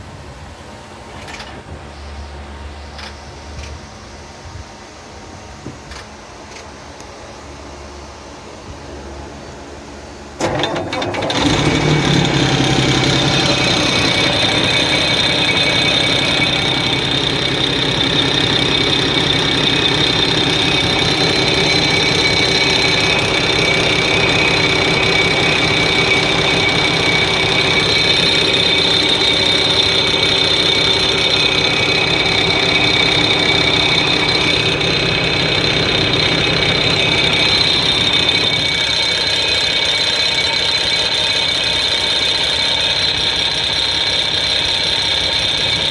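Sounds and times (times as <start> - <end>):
diesel engine idling: 9.2 - 45.9
high-pitched whine: 12.2 - 45.9.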